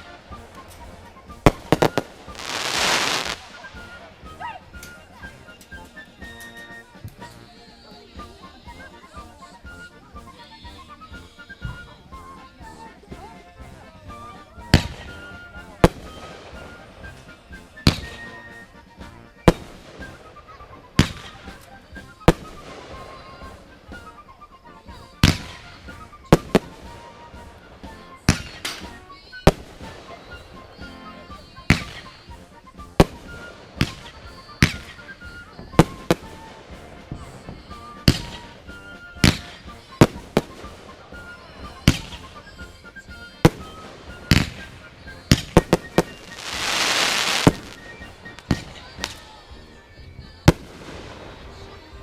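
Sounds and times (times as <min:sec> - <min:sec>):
fireworks exploding: 0:00.0 - 0:06.0, 0:19.4 - 0:24.1, 0:25.2 - 0:30.6, 0:33.0 - 0:35.0, 0:35.6 - 0:38.6, 0:39.2 - 0:41.0, 0:45.3 - 0:49.3, 0:50.4 - 0:51.5.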